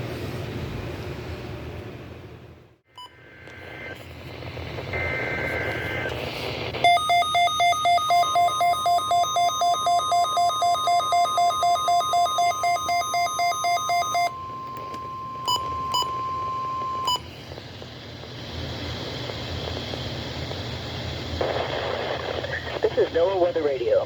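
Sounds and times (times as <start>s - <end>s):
radio hiss: 3.2s - 6.9s, 17.4s - 24.0s
rapid alarm beeps: 6.8s - 17.3s
steady warning alarm tone: 6.8s - 17.3s.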